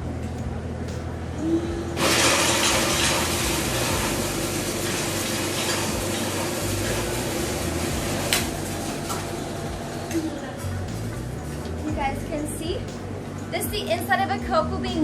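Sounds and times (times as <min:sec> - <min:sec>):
low motor hum: 0:00.0 - 0:15.0
winnowing machine rushing hiss: 0:02.0 - 0:11.2.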